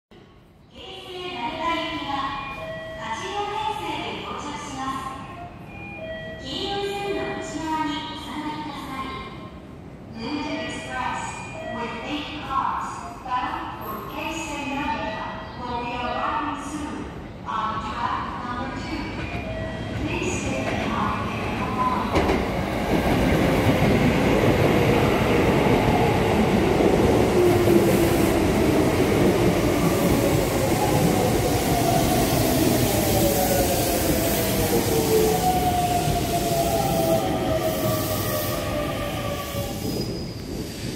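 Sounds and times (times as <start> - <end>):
train wheels on rails: 19.1 - 40.9.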